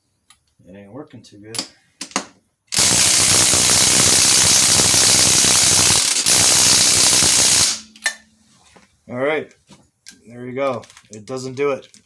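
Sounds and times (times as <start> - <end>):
impact wrench hammering: 1.6 - 8.3.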